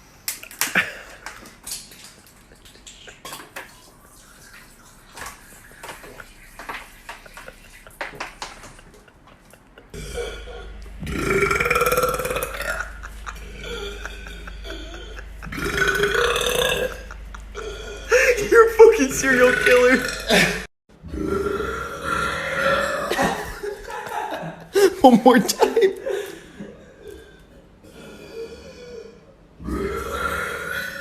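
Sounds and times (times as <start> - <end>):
man belching: 9.9 - 23.4.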